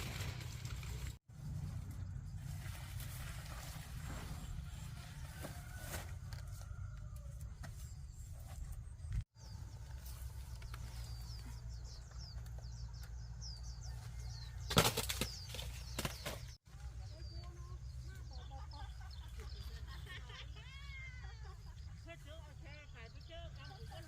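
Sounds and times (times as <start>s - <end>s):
small birds chirping: 6.7s - 24.0s.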